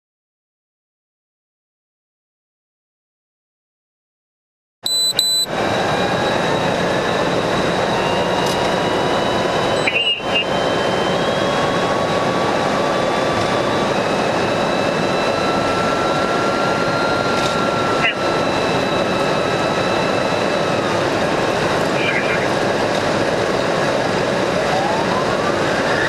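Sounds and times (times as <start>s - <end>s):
short high electronic beeps: 4.8s - 5.5s, 9.8s - 10.6s
road and wind noise: 4.9s - 26.0s.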